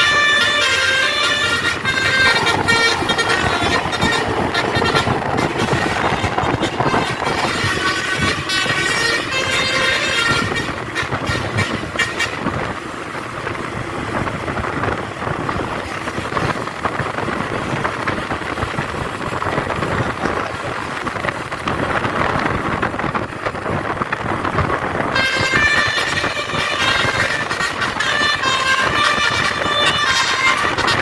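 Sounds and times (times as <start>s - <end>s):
multi-note musical air horn: 0.0s - 12.6s, 25.1s - 31.0s
bus engine and road noise: 0.0s - 31.0s.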